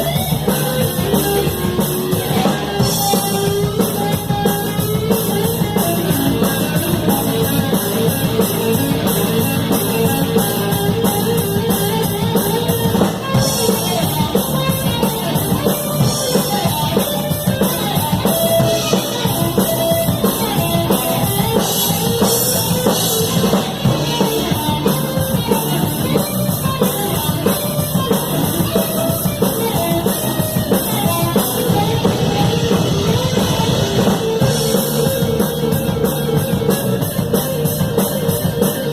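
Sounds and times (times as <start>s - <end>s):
drums and cymbals: 0.0s - 38.9s
electric guitar: 0.0s - 38.9s.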